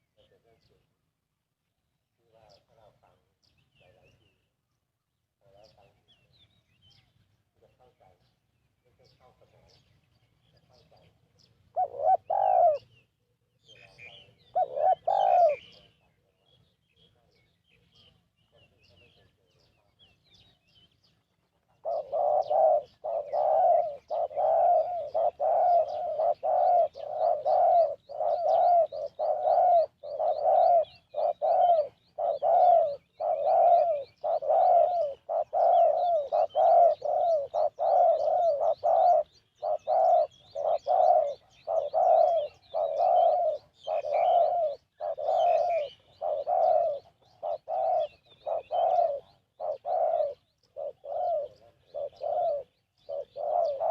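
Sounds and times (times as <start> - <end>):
dove cooing: 0.0 - 0.8, 10.9 - 16.4, 21.5 - 53.9
faint high bird chirps: 2.2 - 53.9.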